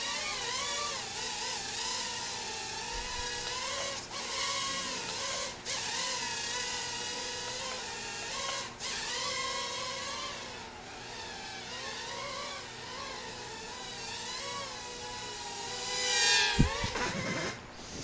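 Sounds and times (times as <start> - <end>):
drone motors and propellers whining: 0.0 - 18.0.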